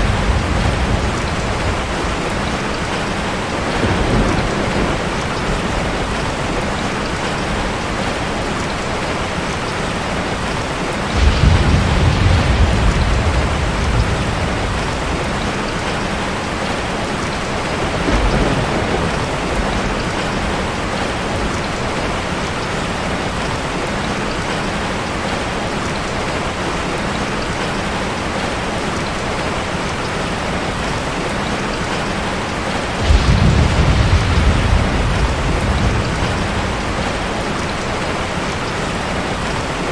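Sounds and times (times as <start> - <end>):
thunder rumble: 0.0 - 8.0, 11.1 - 22.2, 32.8 - 38.4
heavy rain: 0.0 - 39.9.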